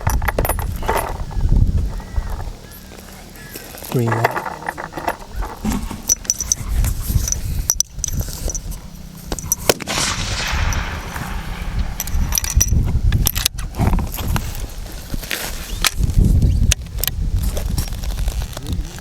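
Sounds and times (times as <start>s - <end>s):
rifle shot: 9.7s - 13.6s
low rumble: 9.8s - 14.8s
sharp clicks and knocks: 10.6s - 14.4s.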